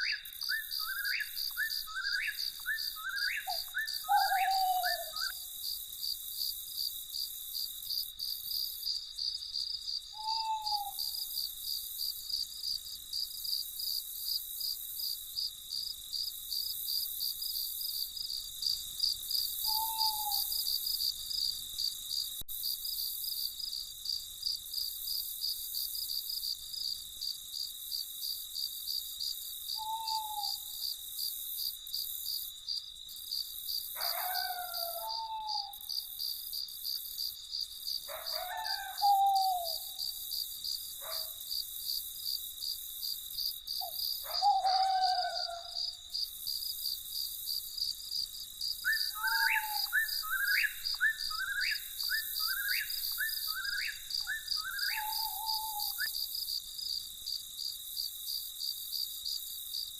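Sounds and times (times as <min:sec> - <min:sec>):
bird call: 0:00.0 - 0:05.4, 0:10.2 - 0:11.2, 0:19.7 - 0:20.7, 0:38.2 - 0:40.0, 0:43.8 - 0:45.8, 0:48.9 - 0:56.2
owl hooting: 0:00.0 - 0:05.4, 0:10.2 - 0:11.2, 0:19.7 - 0:20.6, 0:29.8 - 0:30.7, 0:34.0 - 0:35.9, 0:38.1 - 0:40.0, 0:43.8 - 0:46.0, 0:48.8 - 0:56.2
crickets chirping: 0:00.0 - 0:59.9.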